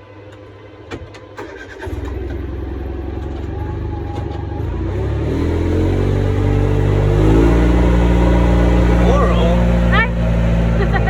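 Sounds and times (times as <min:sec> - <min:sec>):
vehicle engine running: 0:02.2 - 0:11.0.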